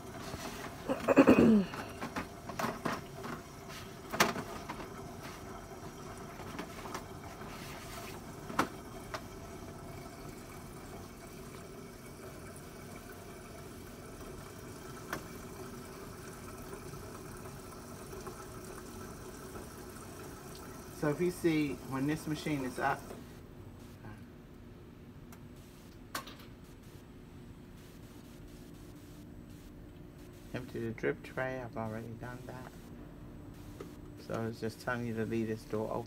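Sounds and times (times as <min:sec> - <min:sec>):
running water: 0:00.0 - 0:23.2
coffee machine pump hum: 0:00.0 - 0:24.3, 0:25.3 - 0:36.0.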